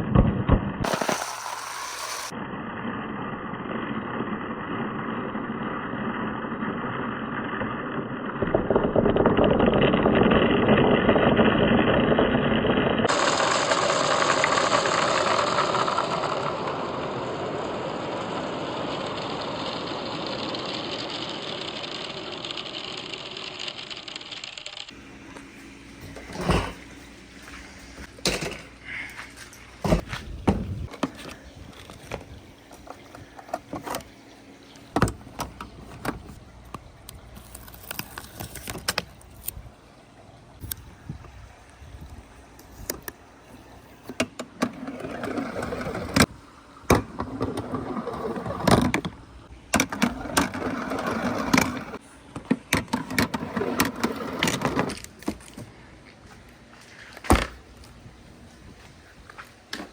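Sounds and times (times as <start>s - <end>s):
marbles rolling on a marble run: 0.8s - 2.3s, 7.2s - 24.9s
balls clicking and knocking: 7.5s - 16.5s.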